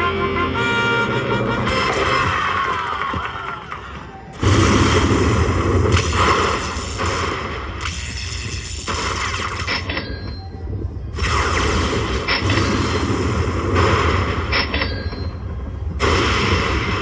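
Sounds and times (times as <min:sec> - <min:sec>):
slot machine booming bursts: 0:01.6 - 0:02.8, 0:04.4 - 0:08.2, 0:11.2 - 0:14.7, 0:16.0 - 0:17.0
steady low rumble: 0:04.3 - 0:17.0.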